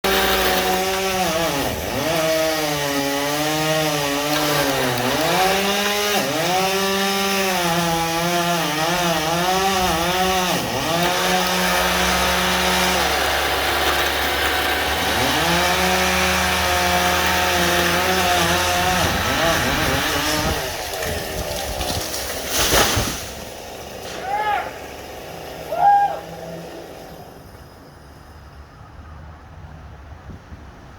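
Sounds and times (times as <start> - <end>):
chainsaw cutting wood: 0.0 - 27.9
loud crash: 22.1 - 23.4.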